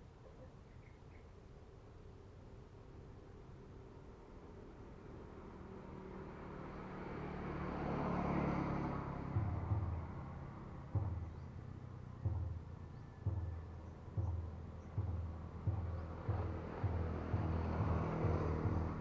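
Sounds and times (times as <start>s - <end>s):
vehicle passing by: 4.9s - 19.0s
low thumps: 9.3s - 19.0s.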